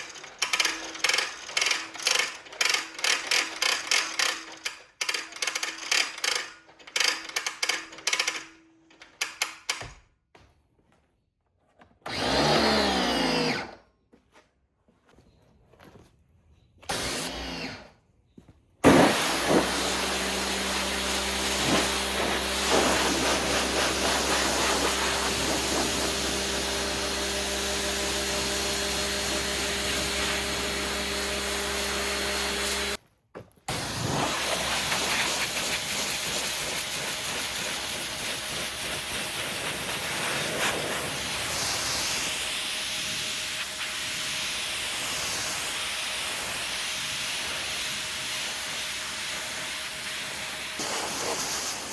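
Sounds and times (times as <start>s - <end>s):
pressure washer spray hiss: 18.8s - 33.0s, 33.7s - 51.9s
motor hum: 19.1s - 33.0s.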